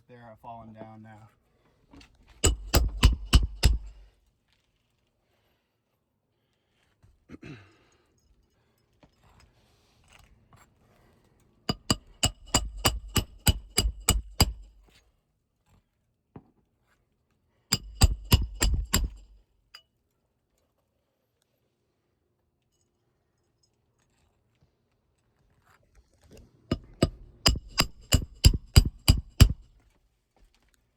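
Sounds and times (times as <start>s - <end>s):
hammer nailing shingles: 2.4s - 4.0s, 11.7s - 14.8s, 17.7s - 19.4s, 26.7s - 29.7s.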